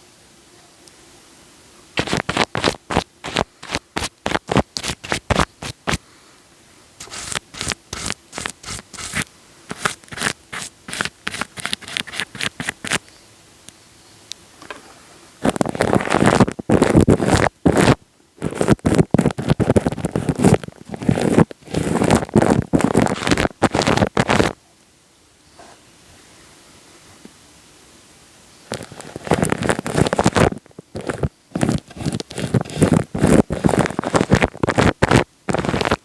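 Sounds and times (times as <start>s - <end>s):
crackly scratching on microphone: 2.0s - 6.0s, 7.0s - 13.1s, 15.4s - 24.6s, 28.7s - 36.0s.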